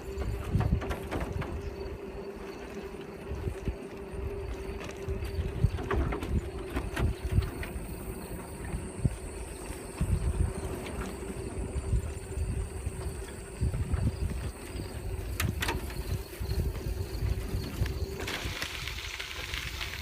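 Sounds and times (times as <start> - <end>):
bike clicks and knocks: 0.0 - 2.0, 4.8 - 8.1, 13.8 - 20.0
wind buffeting microphone: 0.0 - 20.0.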